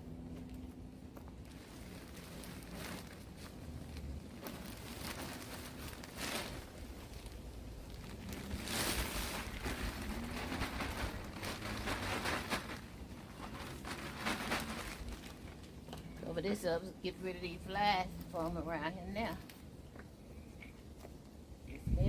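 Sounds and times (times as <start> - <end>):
plastic bag crinkling: 1.0 - 16.6
compost rushing out: 1.4 - 17.7.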